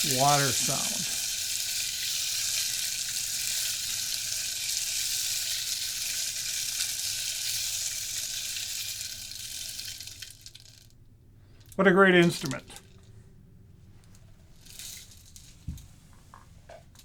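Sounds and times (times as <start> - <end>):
rain stick rushing hiss: 0.0 - 10.6.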